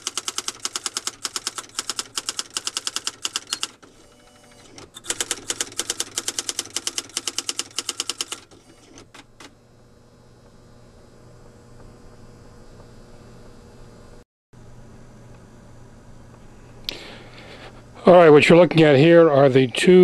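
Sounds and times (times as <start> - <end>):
electronic typewriter typing: 0.0 - 9.4
typewriter faint hum: 0.0 - 9.5.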